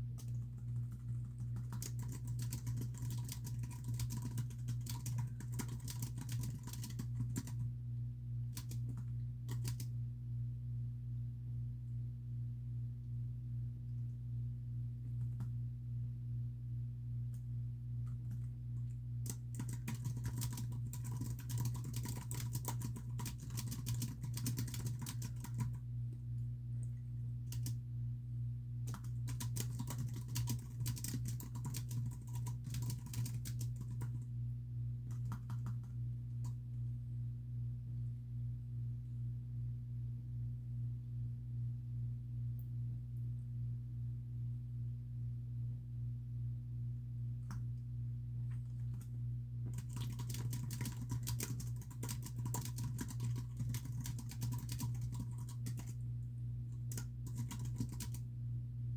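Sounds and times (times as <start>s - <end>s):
steady low hum: 0.0s - 58.9s
typing on computer keyboard: 0.2s - 7.6s, 8.5s - 9.9s, 19.2s - 25.8s, 27.4s - 27.8s, 28.9s - 34.2s, 35.1s - 36.6s, 49.7s - 56.0s, 56.8s - 58.2s.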